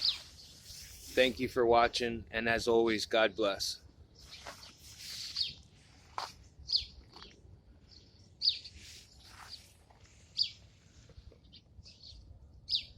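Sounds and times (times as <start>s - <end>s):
bird chirping: 0.0s - 1.3s, 4.1s - 5.6s, 6.6s - 12.9s.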